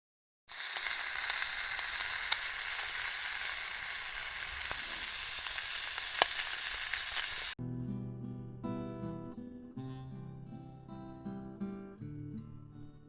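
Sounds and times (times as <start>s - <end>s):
wood fire crackling: 0.6s - 7.6s
fire pops: 0.7s - 7.6s.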